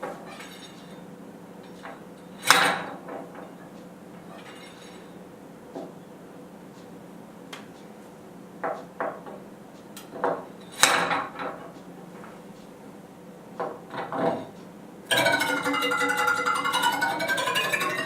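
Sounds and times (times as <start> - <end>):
iron bar clinking: 0.3 - 1.0, 4.3 - 5.1, 15.1 - 18.0.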